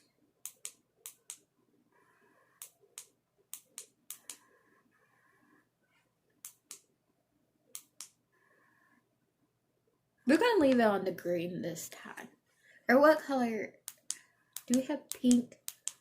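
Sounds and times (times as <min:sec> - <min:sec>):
faint steady tone: 0:00.0 - 0:10.2.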